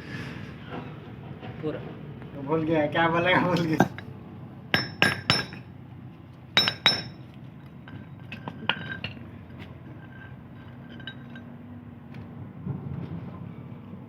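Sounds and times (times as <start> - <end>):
low steady hum: 3.2 - 12.1
metallic clinks: 10.0 - 11.5.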